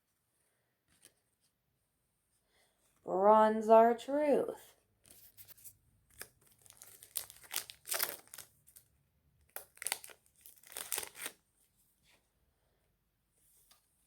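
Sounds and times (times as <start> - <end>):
foil wrapper crinkling: 5.4 - 8.9, 9.5 - 11.4.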